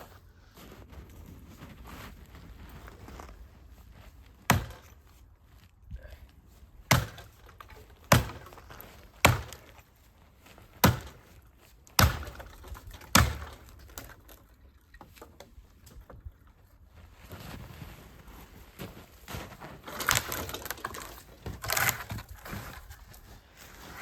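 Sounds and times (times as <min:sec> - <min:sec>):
axe chopping wood: 0:04.5 - 0:05.0, 0:06.9 - 0:09.9, 0:10.8 - 0:11.3, 0:11.9 - 0:14.3, 0:19.8 - 0:22.6.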